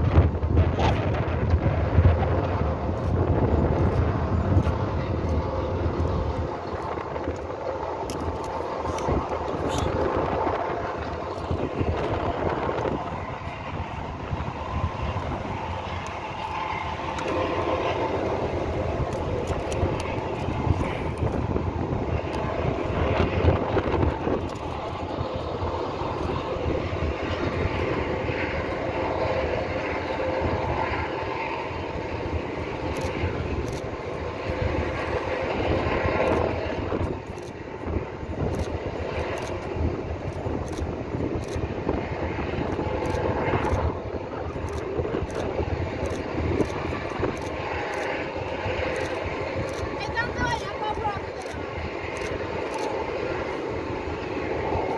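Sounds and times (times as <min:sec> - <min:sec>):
continuous low rumble: 0:00.0 - 0:54.9
engine drone: 0:00.0 - 0:54.9.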